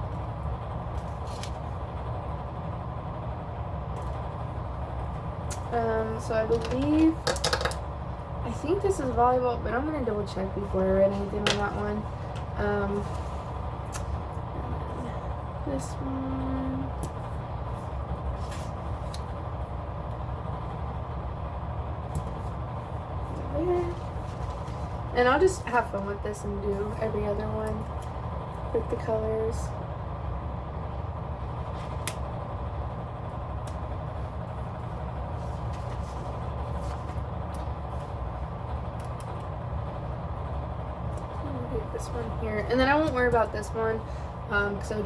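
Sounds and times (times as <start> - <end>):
low background rumble: 0.0 - 45.0
stickers and paper rustling: 23.3 - 27.2, 35.4 - 38.1.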